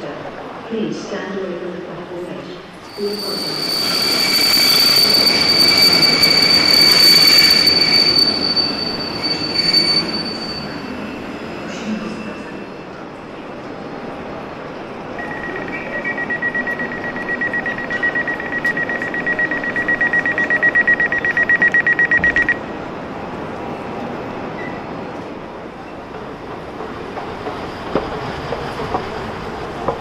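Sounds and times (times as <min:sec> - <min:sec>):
train rumbling: 0:02.6 - 0:15.4, 0:22.3 - 0:30.0
train door warning beep: 0:02.9 - 0:11.1, 0:15.2 - 0:22.7, 0:24.6 - 0:24.9.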